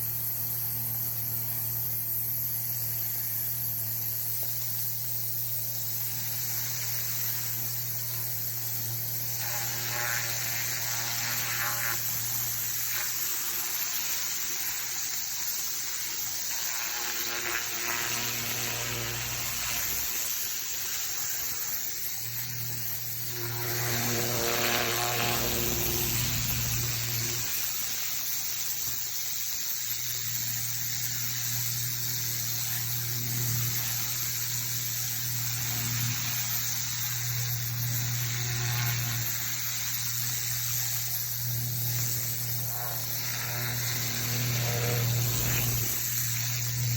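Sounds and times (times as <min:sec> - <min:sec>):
high-pressure water jet hiss: 0:00.0 - 0:46.9
pressure washer motor hum: 0:17.7 - 0:28.4, 0:31.3 - 0:46.9.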